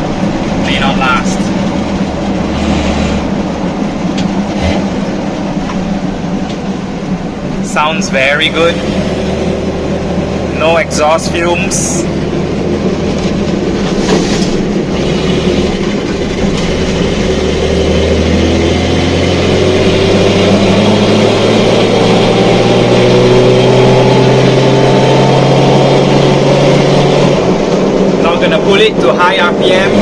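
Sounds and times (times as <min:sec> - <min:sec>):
car engine accelerating: 0:00.0 - 0:30.0.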